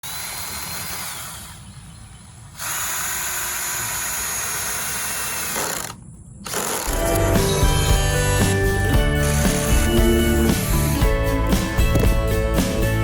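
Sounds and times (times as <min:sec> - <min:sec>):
power drill running: 0:00.0 - 0:01.7, 0:02.6 - 0:11.1.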